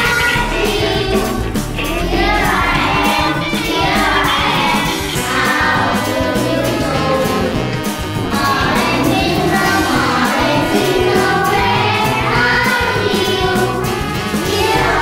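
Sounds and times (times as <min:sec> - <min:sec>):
upbeat backing music: 0:00.0 - 0:15.0
person singing melody: 0:01.9 - 0:11.4.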